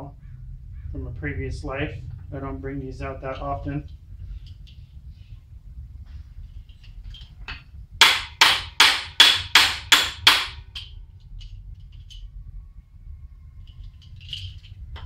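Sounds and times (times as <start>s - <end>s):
hammer striking metal: 8.0s - 10.9s.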